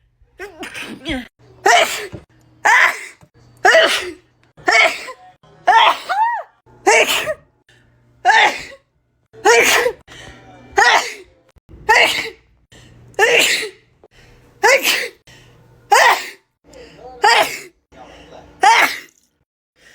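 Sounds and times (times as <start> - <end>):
person sneezing: 0.4 - 6.3, 6.9 - 7.4, 9.4 - 10.0, 11.9 - 12.4, 13.2 - 13.8, 14.6 - 15.2, 18.6 - 19.2.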